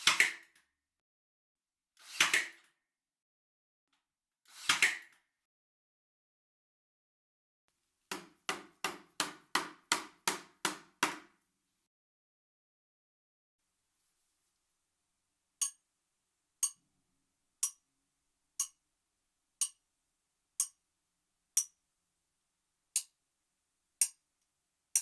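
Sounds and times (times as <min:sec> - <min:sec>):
chisel strikes: 0:08.1 - 0:11.4, 0:18.6 - 0:18.8, 0:23.0 - 0:23.2, 0:24.0 - 0:24.2.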